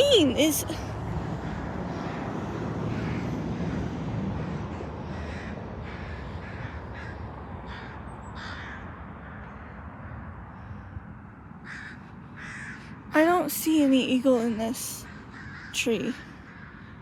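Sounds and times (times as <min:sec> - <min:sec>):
crows cawing: 0:01.4 - 0:11.0, 0:11.6 - 0:13.0, 0:15.0 - 0:17.0.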